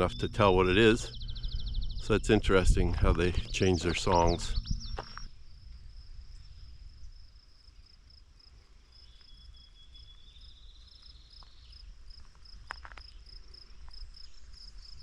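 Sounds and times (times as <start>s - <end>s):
small bird singing: 0.0s - 5.3s, 8.9s - 11.9s
insects trilling: 0.0s - 15.0s.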